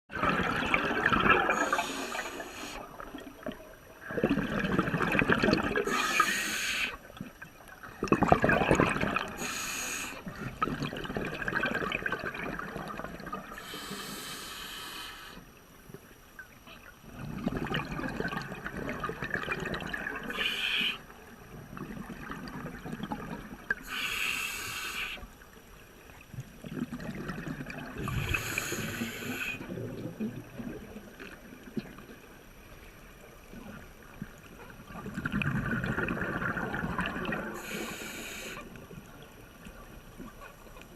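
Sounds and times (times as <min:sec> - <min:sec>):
gurgling bubbles: 0:00.1 - 0:06.4, 0:07.0 - 0:09.6, 0:10.2 - 0:13.9, 0:17.0 - 0:23.9, 0:26.3 - 0:32.3, 0:33.5 - 0:38.2
diver breathing through regulator: 0:01.5 - 0:02.9, 0:05.8 - 0:07.0, 0:09.3 - 0:10.3, 0:13.5 - 0:15.4, 0:20.3 - 0:21.0, 0:23.8 - 0:25.3, 0:28.0 - 0:29.7, 0:37.6 - 0:38.7.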